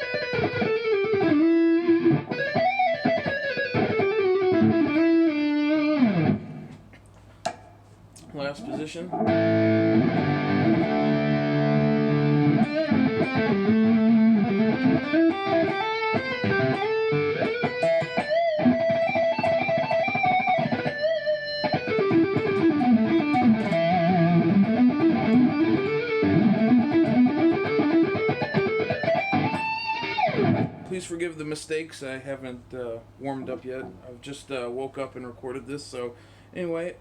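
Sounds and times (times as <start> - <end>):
high-gain electric guitar: 0.0 - 6.8, 9.1 - 30.9.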